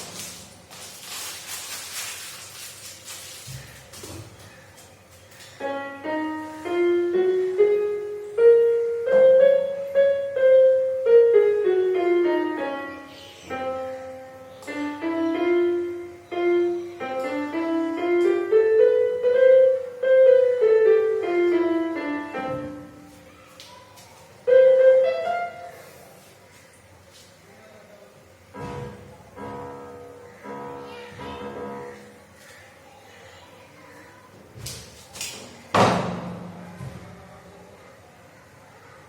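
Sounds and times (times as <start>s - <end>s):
keyboard piano melody: 4.8s - 23.5s, 24.4s - 26.2s, 28.4s - 32.4s.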